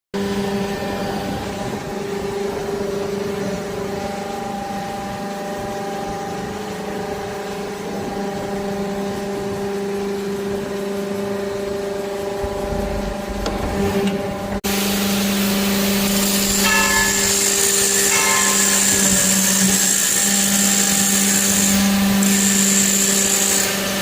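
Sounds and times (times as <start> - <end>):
hydraulic press humming: 10.6 - 24.0
low rumble: 12.2 - 14.6.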